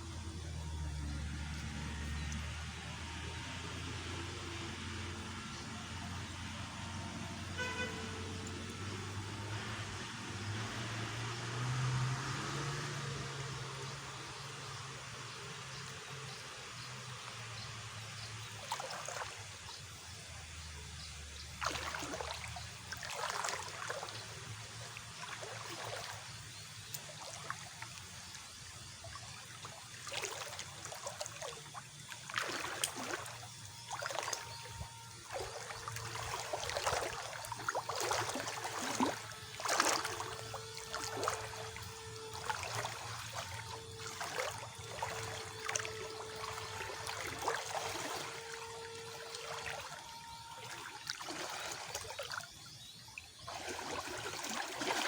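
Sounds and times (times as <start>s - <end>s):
water splashing and trickling: 0.0s - 55.0s
steady low hum: 13.2s - 55.0s.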